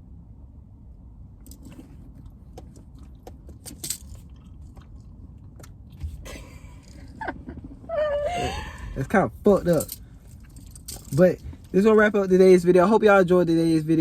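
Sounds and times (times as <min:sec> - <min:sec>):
low steady rumble: 0:00.0 - 0:14.0
chewing and crunching food: 0:01.4 - 0:07.7.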